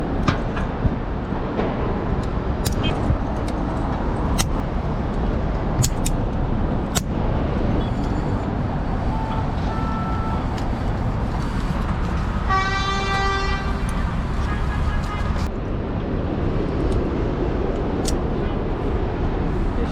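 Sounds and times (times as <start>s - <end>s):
city traffic noise: 0.0s - 19.9s
sharp clicks: 4.3s - 4.7s, 5.8s - 7.2s
car horn blast: 12.5s - 13.8s.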